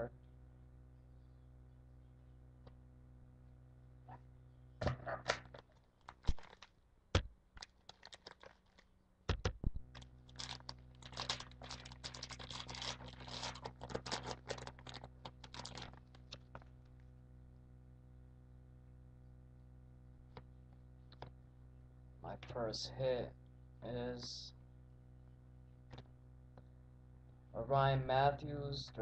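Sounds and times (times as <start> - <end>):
wrapper tearing and crinkling: 5.3 - 6.8, 7.6 - 8.9, 9.9 - 16.6.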